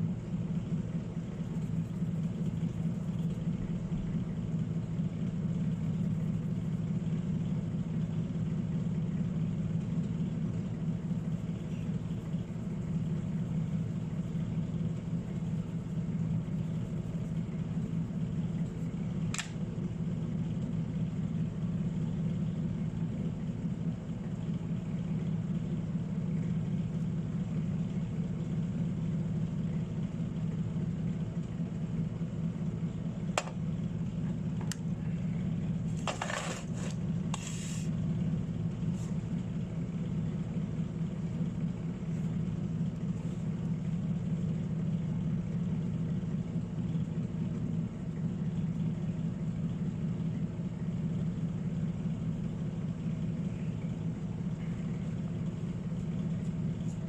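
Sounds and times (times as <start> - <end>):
low machine hum: 0.0 - 57.0
short clicks and scrapes: 36.0 - 37.9.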